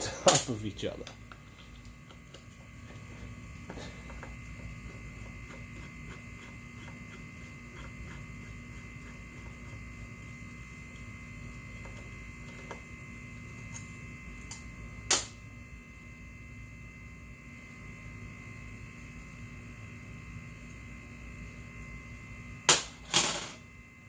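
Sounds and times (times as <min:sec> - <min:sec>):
steady electrical hum: 0:00.0 - 0:24.0.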